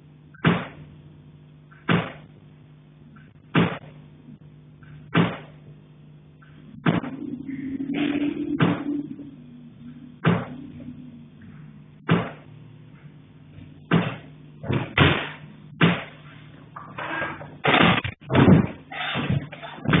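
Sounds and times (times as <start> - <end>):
faint low hum: 0.0 - 20.0.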